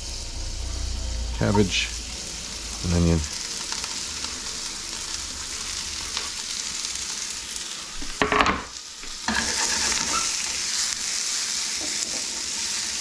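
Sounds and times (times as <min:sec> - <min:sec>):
vegetables sizzling in a pan: 0:00.0 - 0:13.0
stirring in a pan: 0:09.0 - 0:13.0.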